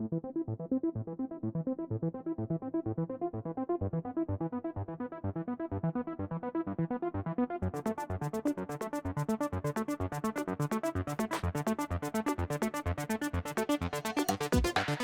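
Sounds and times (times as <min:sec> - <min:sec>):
electronic music with steady beat: 0:09.8 - 0:15.0.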